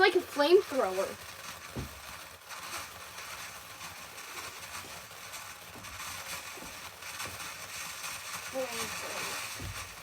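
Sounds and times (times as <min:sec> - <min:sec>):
firework fountain hissing: 0:00.0 - 0:10.0
soft low thump: 0:01.8 - 0:02.0.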